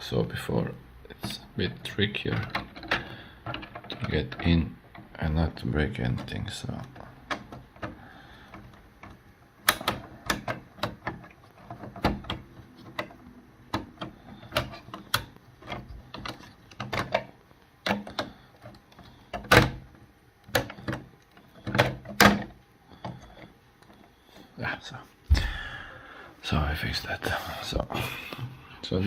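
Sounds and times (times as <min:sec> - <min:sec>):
plastic bricks clicking and knocking: 0:06.0 - 0:23.6.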